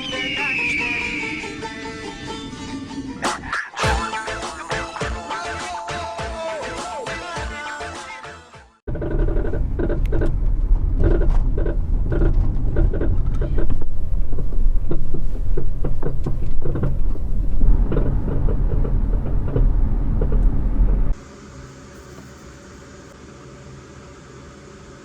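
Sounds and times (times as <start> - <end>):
road and wind rumble: 8.9 - 21.2
suspension clunks and knocks: 8.9 - 21.2.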